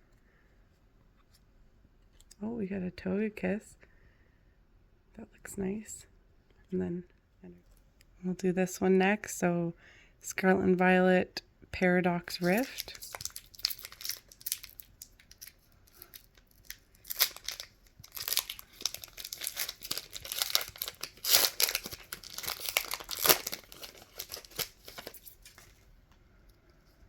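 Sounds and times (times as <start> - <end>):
foil wrapper crinkling and ripping: 12.3 - 25.8.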